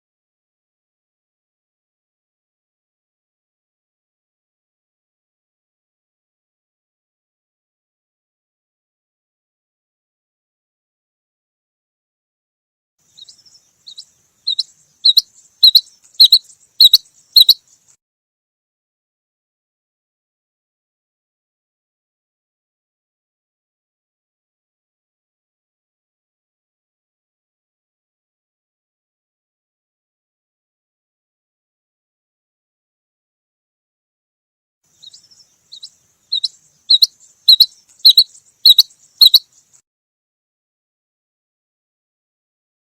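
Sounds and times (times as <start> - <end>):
quail double-note calls: 14.5 - 17.6, 36.4 - 39.4.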